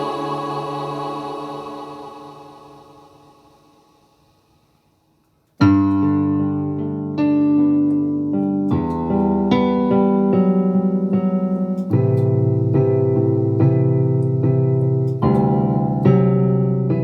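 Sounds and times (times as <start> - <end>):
electric piano synth chords: 0.0 - 3.7, 5.6 - 17.0.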